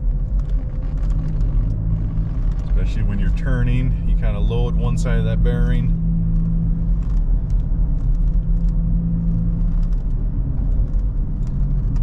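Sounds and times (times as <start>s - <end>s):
in-cabin road noise: 0.0s - 12.0s.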